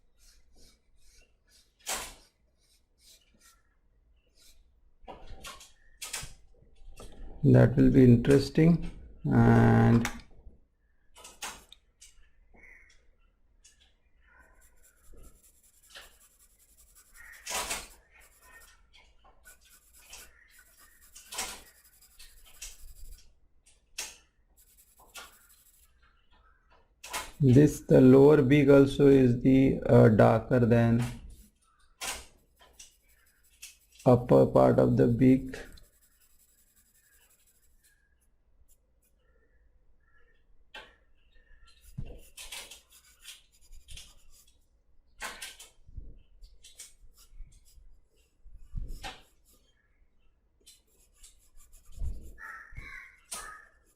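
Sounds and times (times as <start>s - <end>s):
pencil sketching on paper: 0.1s - 3.7s, 14.5s - 18.8s, 19.4s - 23.2s, 24.6s - 26.0s, 32.5s - 38.0s, 41.8s - 44.6s, 47.0s - 49.6s, 50.8s - 53.9s.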